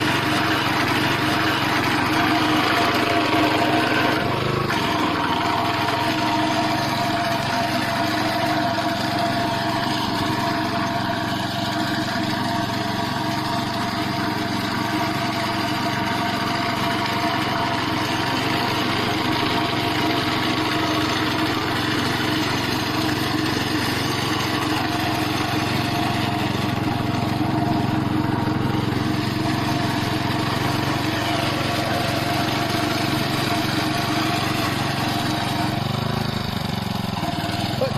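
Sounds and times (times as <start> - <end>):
small grass cutter engine: 0.0 - 37.9.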